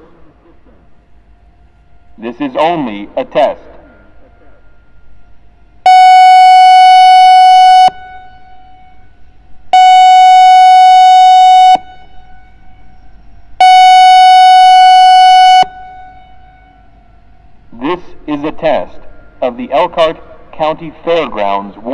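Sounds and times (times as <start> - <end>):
pulsing high siren tone: 1.0 - 17.8.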